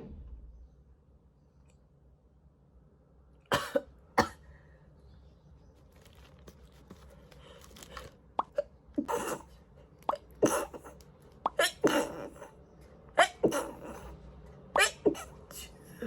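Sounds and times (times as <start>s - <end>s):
person coughing: 3.5s - 4.4s.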